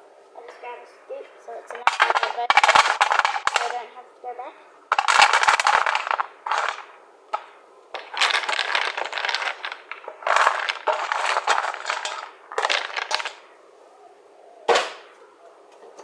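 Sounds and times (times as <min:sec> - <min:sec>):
dry dog biscuits rattling: 0:01.5 - 0:04.1, 0:04.9 - 0:13.6.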